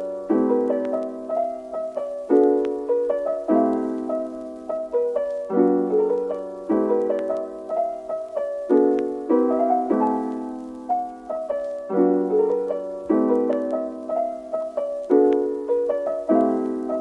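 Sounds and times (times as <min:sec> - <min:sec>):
soft lo-fi piano chords: 0:00.0 - 0:17.0.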